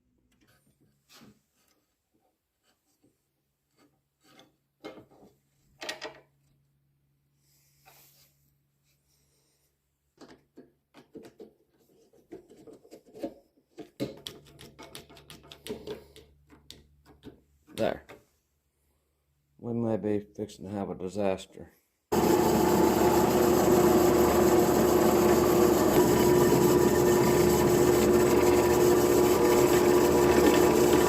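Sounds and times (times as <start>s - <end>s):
tools knocking and scraping wood: 0.3s - 6.2s, 10.2s - 18.3s.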